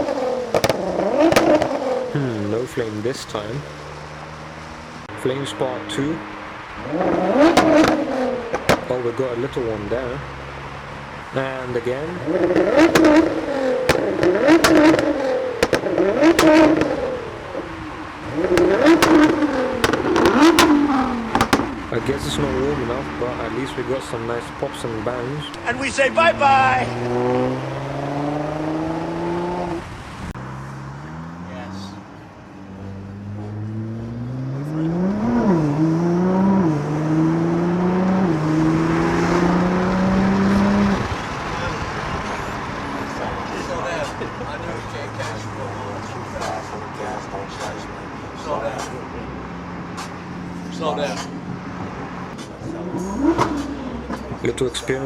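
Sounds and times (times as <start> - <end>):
exhaust pops and bangs: 0.0 - 4.0, 6.0 - 10.2, 11.2 - 25.8, 40.2 - 48.0, 49.8 - 50.3, 51.0 - 55.0
car engine revving: 0.0 - 55.0.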